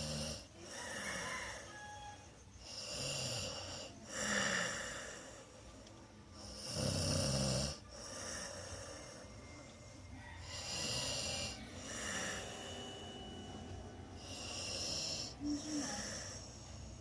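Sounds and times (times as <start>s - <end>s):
person snoring: 0.0s - 1.4s, 2.6s - 5.4s, 6.4s - 9.3s, 10.4s - 13.2s, 14.2s - 17.0s
breathy hiss: 10.4s - 17.0s.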